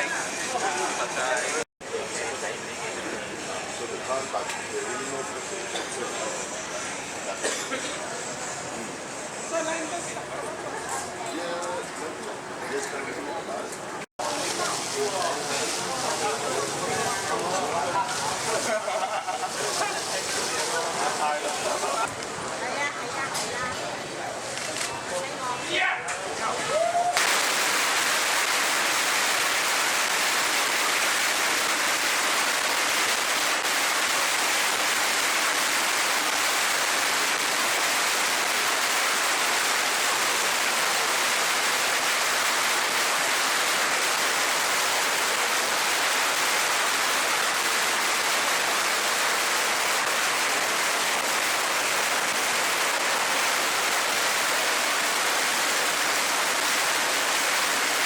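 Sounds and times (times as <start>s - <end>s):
firecrackers crackling: 0.0s - 10.3s, 14.2s - 58.0s.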